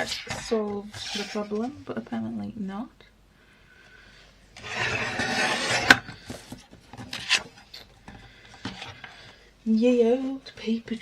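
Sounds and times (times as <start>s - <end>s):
paper trimmer blade sliding: 4.6s - 6.0s.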